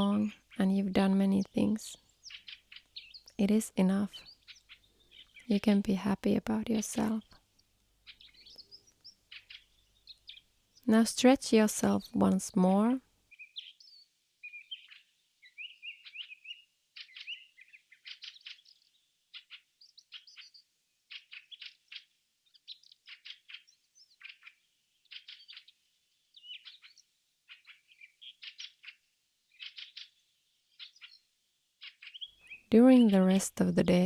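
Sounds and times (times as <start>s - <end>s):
birds chirping and trilling: 0.0s - 34.0s.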